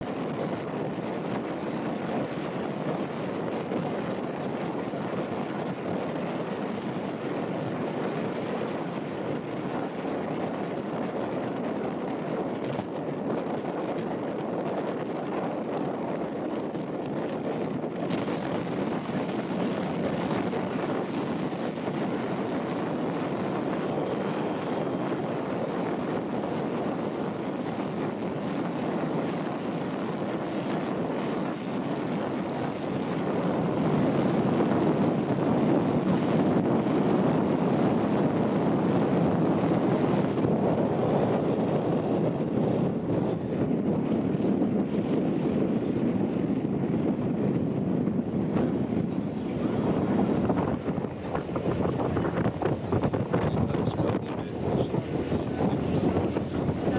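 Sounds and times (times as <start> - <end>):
ship rushing noise: 0.0 - 34.0, 47.4 - 56.9
wind buffeting microphone: 0.0 - 56.9.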